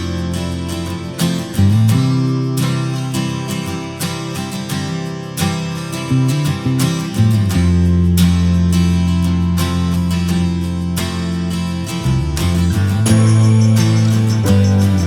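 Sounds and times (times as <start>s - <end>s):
strummed acoustic guitar music: 0.0s - 15.0s
bass line: 10.8s - 15.0s.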